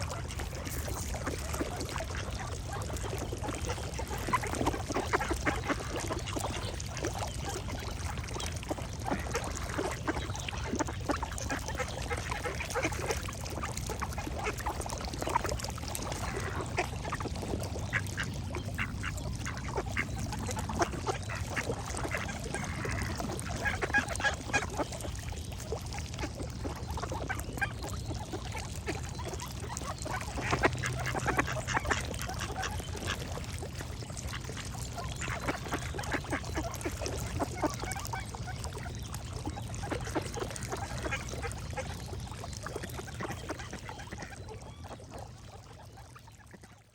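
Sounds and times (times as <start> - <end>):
ducks quacking: 16.0 - 24.9, 28.8 - 41.9.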